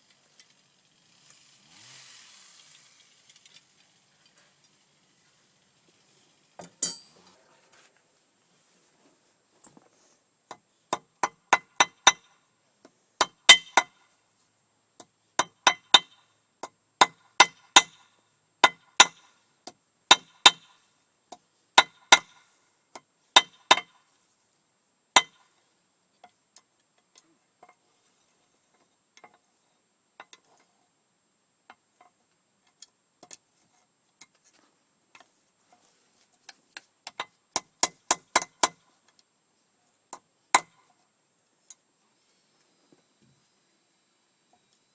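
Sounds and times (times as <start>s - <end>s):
hammer striking anvil: 6.7s - 7.1s.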